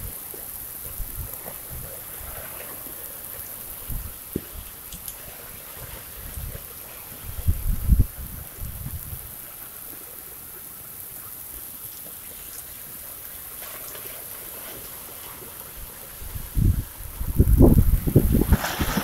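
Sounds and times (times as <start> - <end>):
rain hissing: 0.0 - 19.0
running water: 0.0 - 19.0
wind buffeting microphone: 0.8 - 2.9, 3.7 - 9.4, 15.8 - 19.0.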